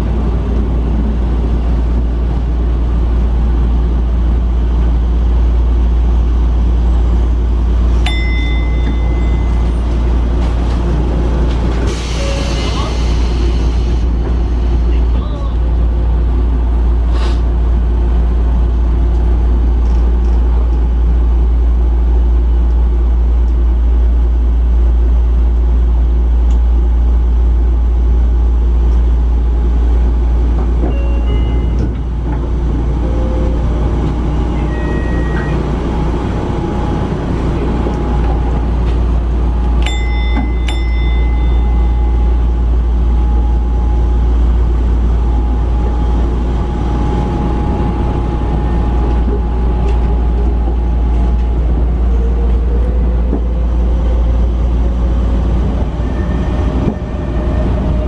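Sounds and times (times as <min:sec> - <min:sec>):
electric train rumbling on track: 0:00.0 - 0:58.0
high-pitched tones: 0:34.3 - 0:35.7.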